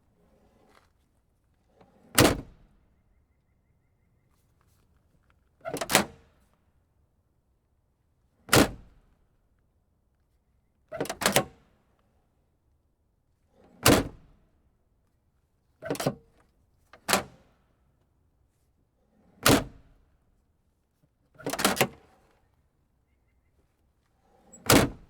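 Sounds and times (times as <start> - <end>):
car trunk lid thunking shut: 24.7 - 25.0.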